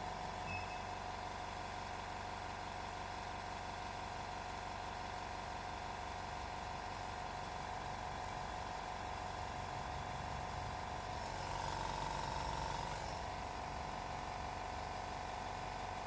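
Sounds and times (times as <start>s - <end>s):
machine motor hum and whine: 11.0s - 14.1s.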